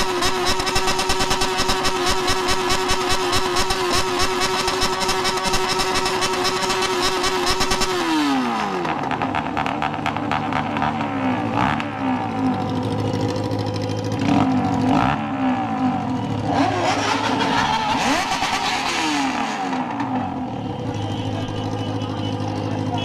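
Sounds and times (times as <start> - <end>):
motorcycle engine revving: 0.0 - 23.0
other vehicle engines: 0.0 - 23.0.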